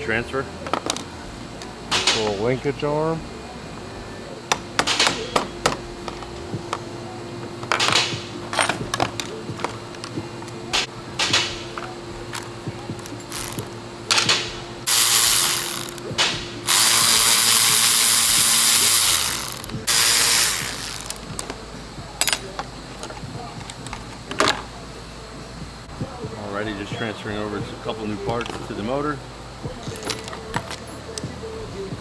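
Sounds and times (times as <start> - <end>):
ratchet ratcheting: 7.7 - 21.6.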